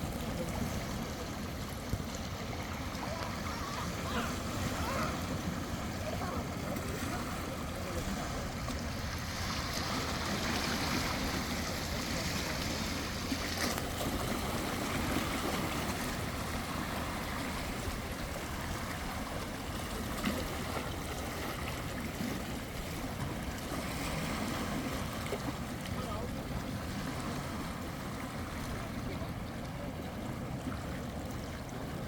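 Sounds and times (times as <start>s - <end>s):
sea waves washing onto shore: 0.0s - 32.0s.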